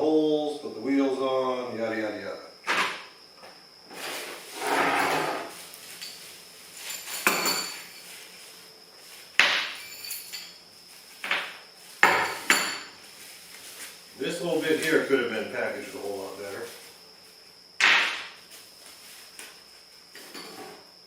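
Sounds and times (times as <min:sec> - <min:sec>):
scraping rustle: 0:03.9 - 0:17.4.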